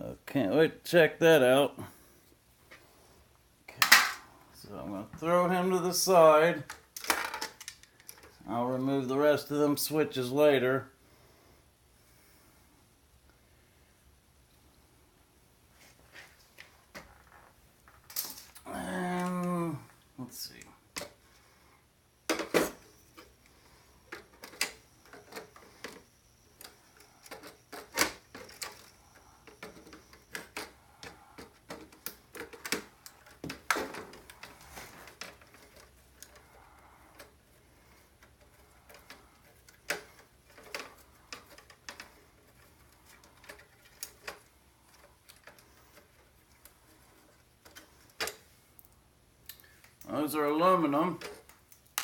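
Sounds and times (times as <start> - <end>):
computer parts clicking and clinking: 24.1 - 37.4.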